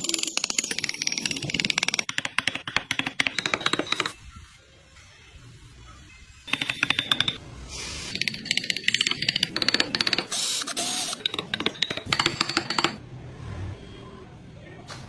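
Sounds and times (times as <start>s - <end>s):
hand tools clicking on wood: 0.0s - 4.2s, 6.5s - 7.4s, 8.1s - 13.0s.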